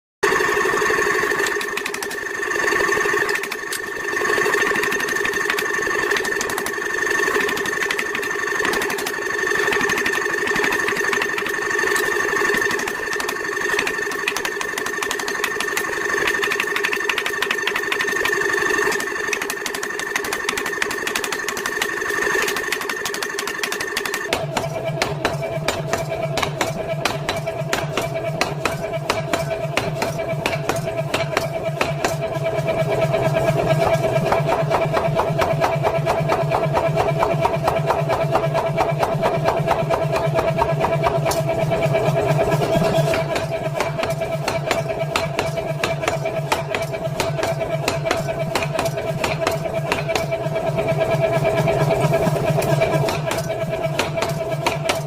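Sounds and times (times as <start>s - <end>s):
forging hammer striking iron: 18.9s - 32.4s, 33.8s - 41.7s, 42.3s - 50.6s, 51.5s - 55.0s.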